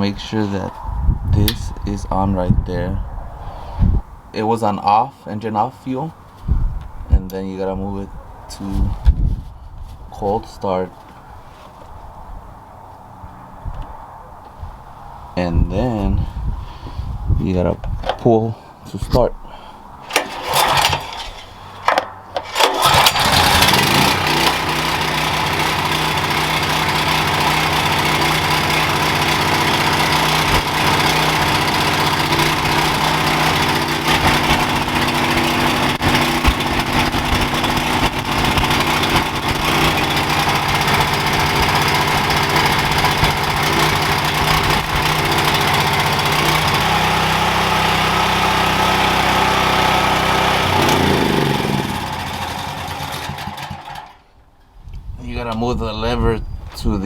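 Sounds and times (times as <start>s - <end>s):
recoil cord pull: 20.1s - 24.6s
generator engine running: 20.1s - 54.2s.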